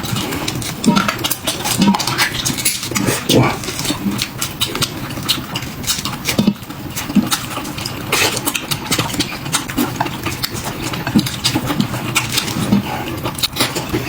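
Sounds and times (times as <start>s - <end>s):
chewing and lip-smacking: 0.0s - 14.0s.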